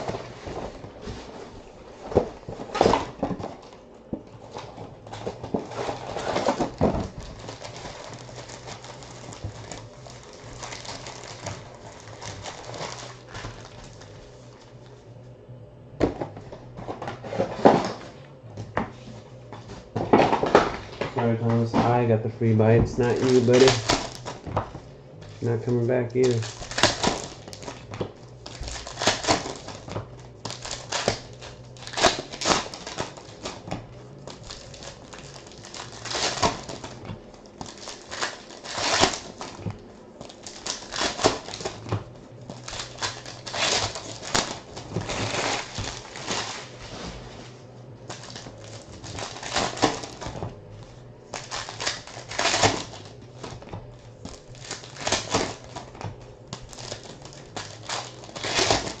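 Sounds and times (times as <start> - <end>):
foil wrappers tearing and crinkling: 0.0 - 1.3, 4.4 - 14.9, 19.7 - 24.6, 25.2 - 59.0
faint low hum: 0.0 - 59.0
cards being handled: 18.9 - 59.0.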